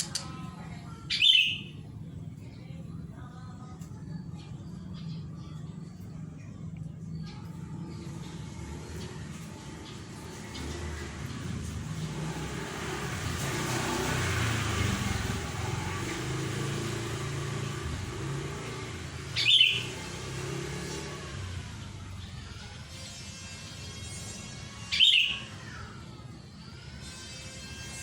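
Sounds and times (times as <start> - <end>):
bird chirps: 1.1 - 1.8, 19.4 - 20.2, 24.9 - 25.6.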